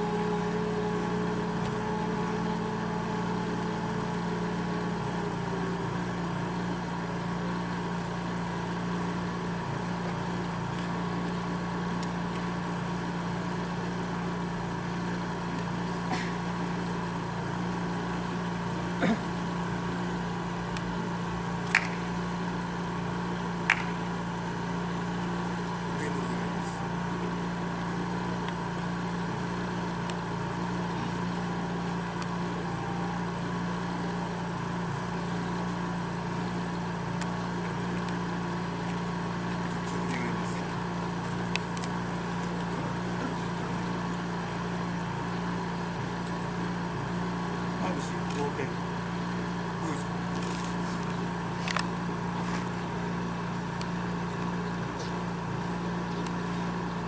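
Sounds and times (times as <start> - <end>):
higher tone: 0.0 - 10.4
low mechanical hum: 0.0 - 57.0
sharp clicks: 21.6 - 22.0, 23.7 - 24.0.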